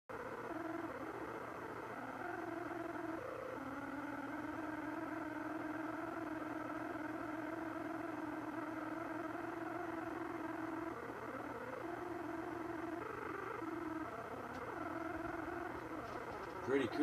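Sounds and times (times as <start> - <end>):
eerie droning hum: 0.1 - 17.0.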